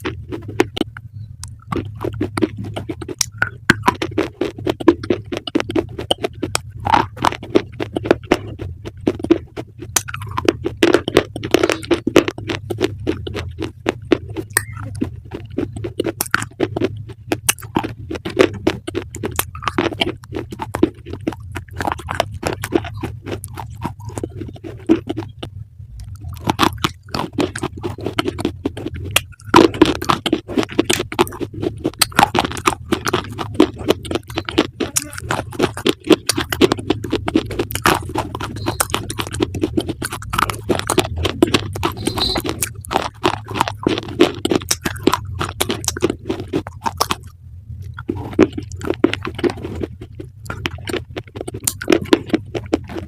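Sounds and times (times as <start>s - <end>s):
crunchy chewing: 0.0s - 53.0s
low steady hum: 0.0s - 53.0s.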